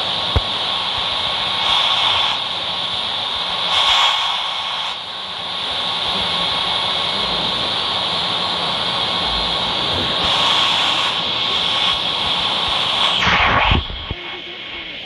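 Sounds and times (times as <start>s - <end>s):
jet engine hiss and whine: 0.0s - 15.0s.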